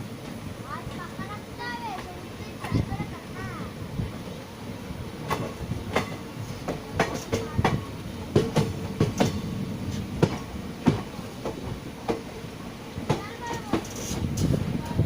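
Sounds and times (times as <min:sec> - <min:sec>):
train running rumble: 0:00.0 - 0:15.0
train wheels clacking on rail joints: 0:01.8 - 0:03.1, 0:05.2 - 0:12.4, 0:13.0 - 0:15.0.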